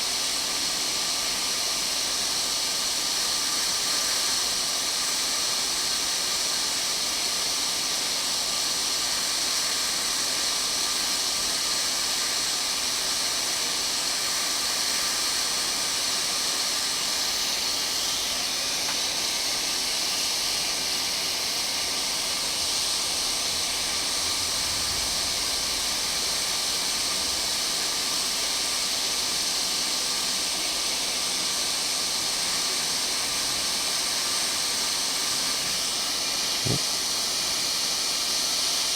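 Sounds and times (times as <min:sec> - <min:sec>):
rushing air hiss: 0:00.0 - 0:38.9
small fan humming: 0:33.4 - 0:37.2.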